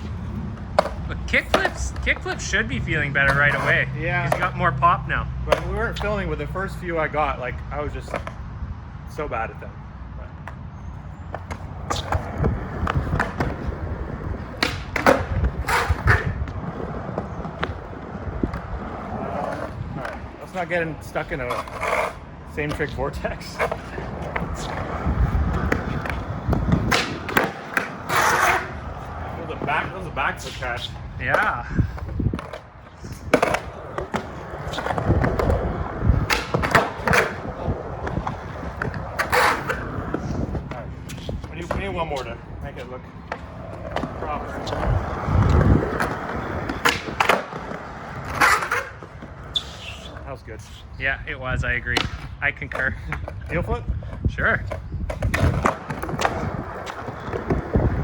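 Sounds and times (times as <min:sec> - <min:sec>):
skateboard popping and landing: 0:00.0 - 0:02.6, 0:03.2 - 0:04.6, 0:11.3 - 0:42.4, 0:43.2 - 0:50.2, 0:54.6 - 0:58.0
skateboard wheels rolling on pavement: 0:00.0 - 0:58.0.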